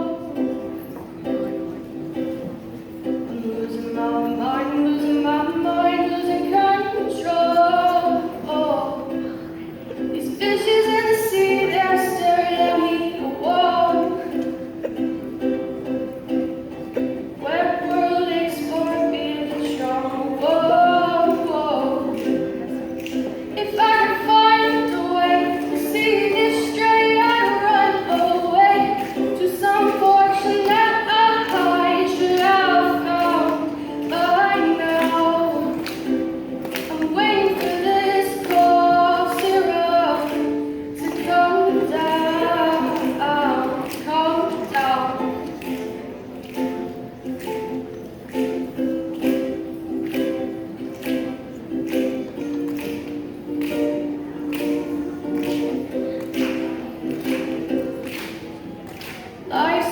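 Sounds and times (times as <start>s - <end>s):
woman singing: 0.0s - 0.7s, 3.2s - 9.3s, 10.0s - 14.6s, 17.4s - 22.7s, 23.5s - 46.0s, 59.5s - 59.9s
strummed ukulele: 0.0s - 59.9s.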